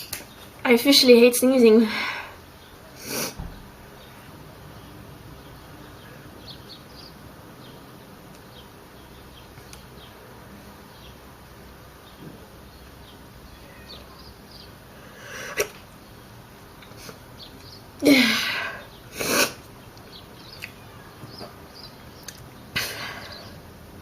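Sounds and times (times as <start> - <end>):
low steady background noise: 0.0 - 24.0
faint high chirps: 12.8 - 14.8.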